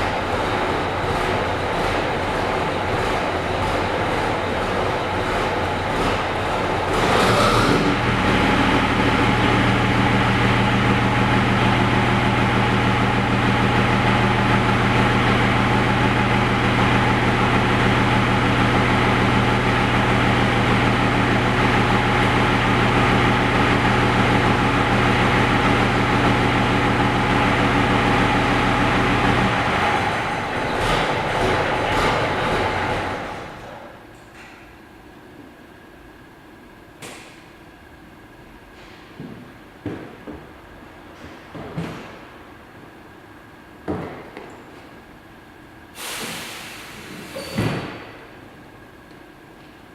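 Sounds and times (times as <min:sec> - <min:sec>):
diesel bus engine idling: 0:00.0 - 0:34.0, 0:45.9 - 0:48.9.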